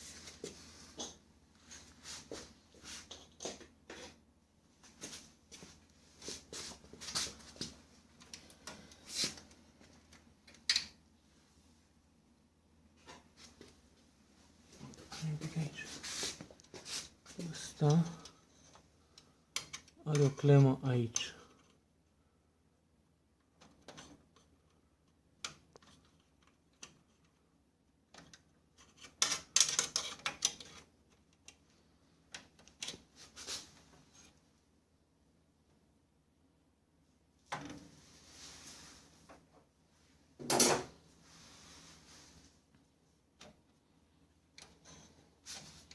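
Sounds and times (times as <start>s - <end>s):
clicks scrapes and knocks of parts: 17.8s - 20.3s, 23.6s - 24.5s, 25.4s - 27.4s, 28.1s - 31.7s
plastic parts clicking and rattling: 28.1s - 31.6s.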